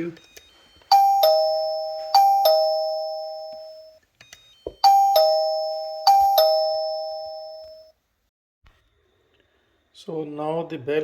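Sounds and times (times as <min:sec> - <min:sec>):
doorbell ding-dong chime: 0:00.5 - 0:08.0.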